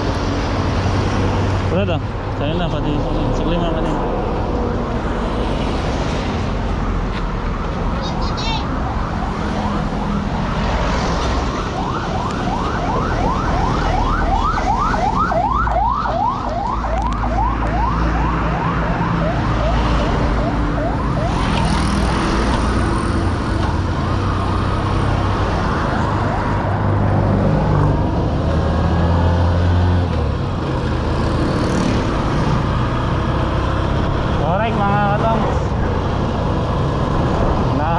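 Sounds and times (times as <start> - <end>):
road noise: 0.0 - 37.9
siren yelp: 8.0 - 10.7, 11.4 - 23.0.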